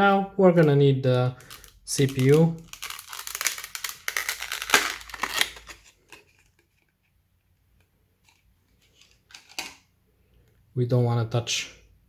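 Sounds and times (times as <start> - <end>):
plastic packaging crackling: 1.4 - 6.9.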